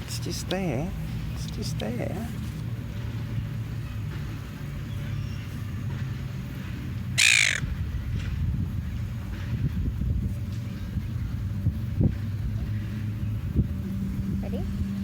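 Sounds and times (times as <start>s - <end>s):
seagull squawking: 7.2s - 7.7s.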